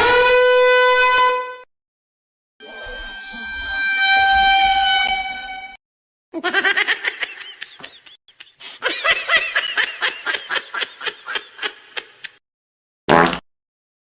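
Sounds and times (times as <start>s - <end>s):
high-pitched snickering laugh: 6.4s - 12.4s.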